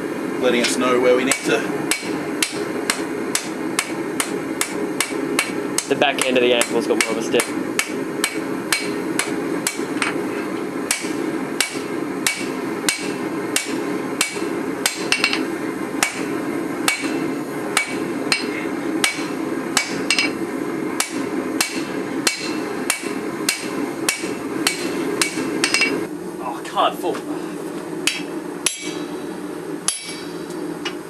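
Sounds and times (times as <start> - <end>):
steady hum: 0.0 - 31.0
hammer striking steel on anvil: 0.6 - 10.2, 10.9 - 20.4, 21.0 - 26.0, 28.1 - 29.1, 29.9 - 31.0.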